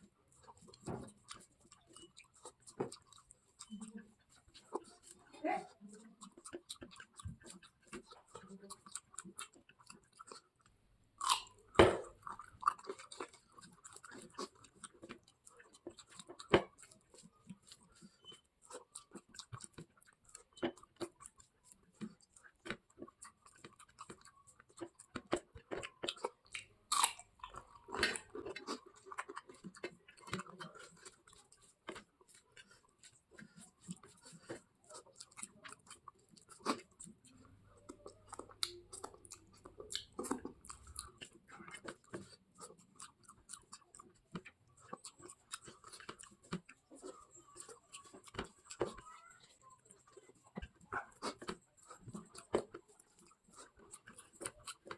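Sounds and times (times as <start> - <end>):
person chewing food: 0.0 - 54.9.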